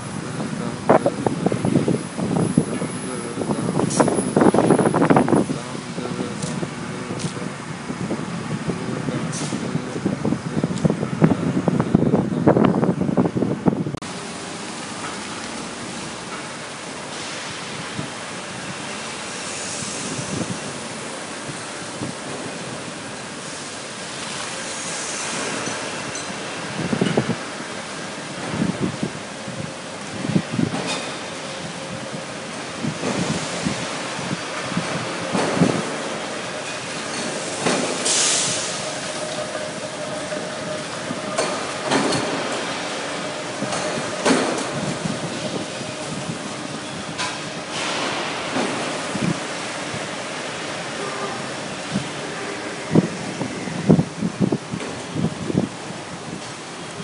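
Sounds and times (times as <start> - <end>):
factory machinery din: 0.0 - 57.0
steady rushing noise: 0.0 - 57.0
short loud hiss: 37.8 - 38.8.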